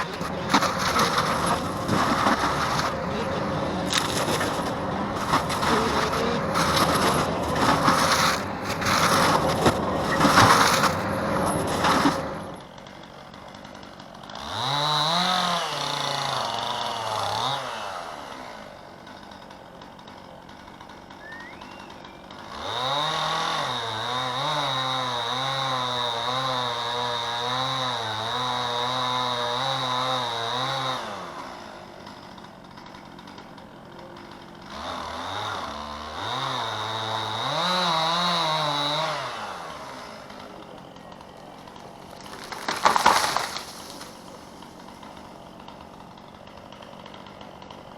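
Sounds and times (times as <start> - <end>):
loud rough noise: 0.0 - 17.8
chainsaw revving: 0.0 - 47.9.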